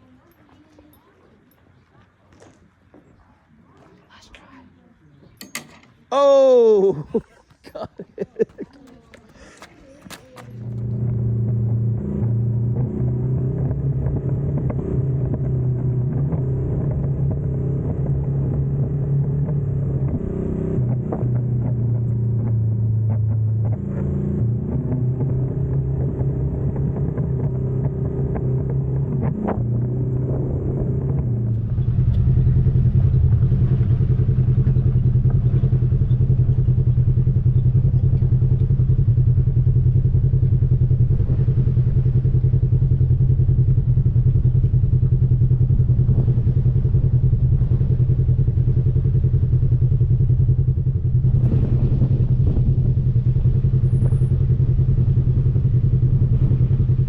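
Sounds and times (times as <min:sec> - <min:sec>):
vehicle rattling: 0:07.5 - 0:14.8, 0:20.8 - 0:57.0
off-road vehicle engine running: 0:07.8 - 0:57.0.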